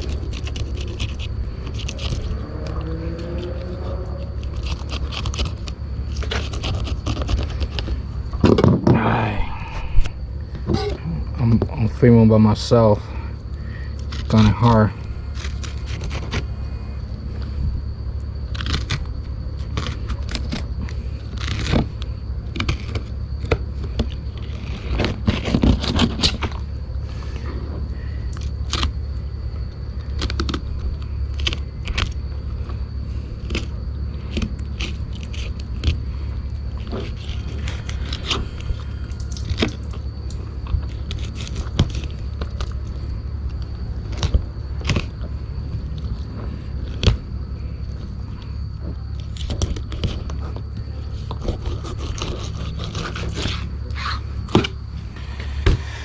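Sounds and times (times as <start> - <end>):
knife scraping through flesh and bone: 0.0 - 3.7, 4.4 - 8.1, 14.0 - 16.6, 36.8 - 39.9, 40.8 - 42.7, 51.0 - 55.3
low hum: 0.0 - 56.0.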